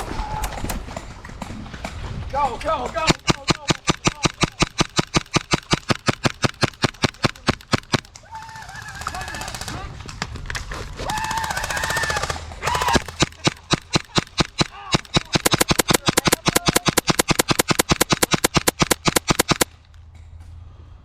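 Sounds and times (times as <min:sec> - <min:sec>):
airsoft gun rapid firing: 0:02.9 - 0:09.9, 0:11.0 - 0:19.8.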